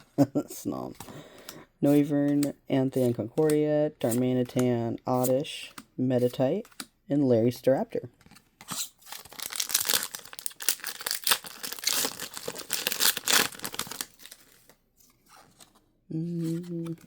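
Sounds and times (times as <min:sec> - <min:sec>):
foil wrapper crinkling and tearing: 0:09.0 - 0:14.8.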